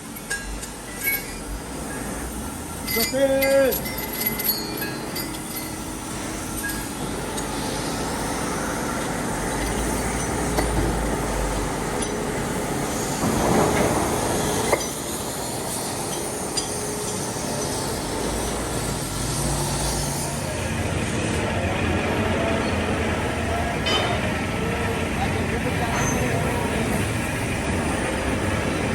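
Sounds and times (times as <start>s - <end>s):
workshop machinery noise: 0.0s - 28.9s
metallic clinks: 0.2s - 1.5s, 2.8s - 7.5s, 14.6s - 18.1s
loud rush of noise: 3.8s - 28.9s.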